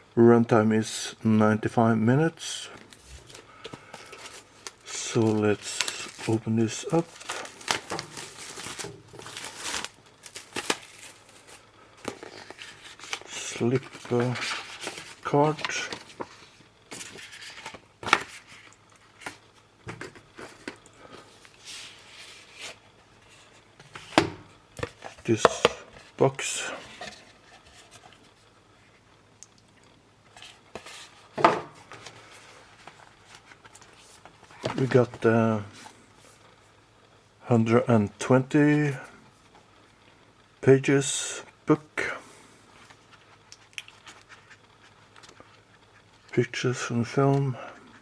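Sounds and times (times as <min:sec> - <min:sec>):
cardboard packaging rustling: 0:02.8 - 0:28.5, 0:30.3 - 0:36.5.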